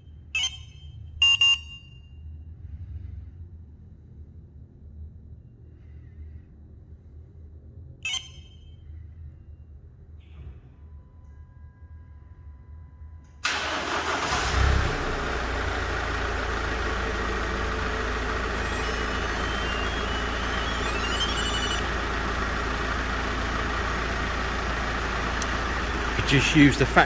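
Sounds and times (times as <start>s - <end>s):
engine starting and idling: 13.4s - 27.0s.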